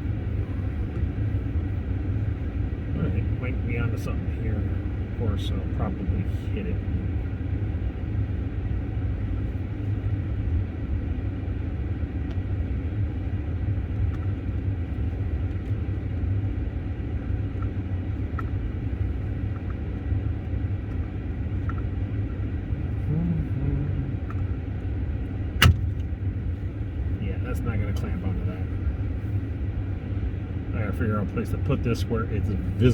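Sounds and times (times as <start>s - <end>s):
heater fan hiss and rumble: 0.0s - 32.9s
sharp click: 25.6s - 26.1s.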